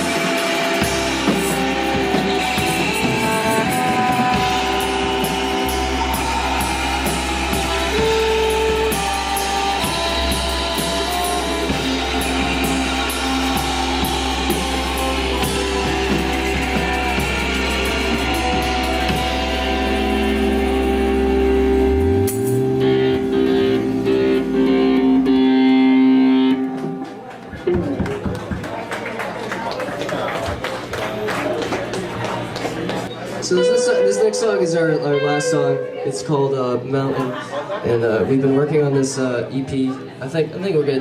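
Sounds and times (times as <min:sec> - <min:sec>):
drum kit with cymbals: 0:00.0 - 0:24.4
low bass notes: 0:00.0 - 0:27.2
electric guitar: 0:00.0 - 0:38.0.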